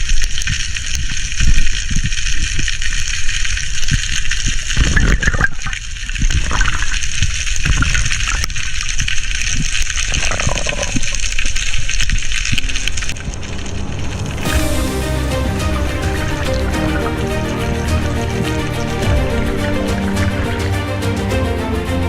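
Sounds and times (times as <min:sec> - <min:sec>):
sea water rushing and gurgling: 0:00.0 - 0:22.0
water bubbling: 0:00.0 - 0:22.0
low thumps: 0:13.0 - 0:22.0.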